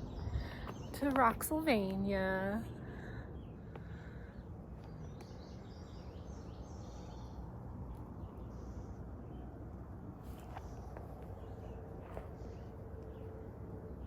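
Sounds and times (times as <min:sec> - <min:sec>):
steady low outdoor noise: 0:00.0 - 0:14.0.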